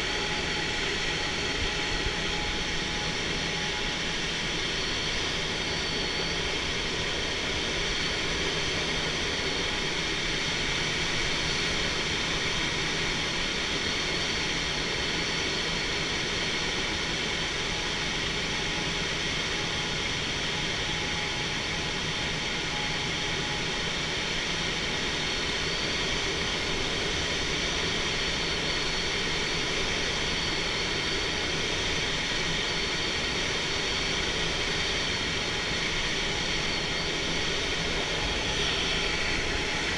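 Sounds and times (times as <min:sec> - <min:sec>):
air rushing around cockpit: 0:20.0 - 0:39.9.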